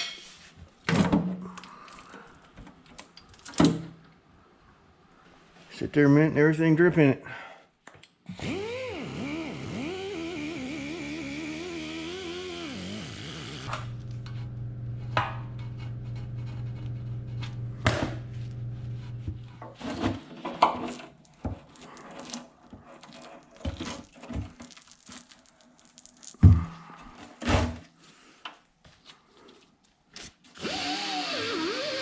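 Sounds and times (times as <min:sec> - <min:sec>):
steady low hum: 0:11.6 - 0:19.6.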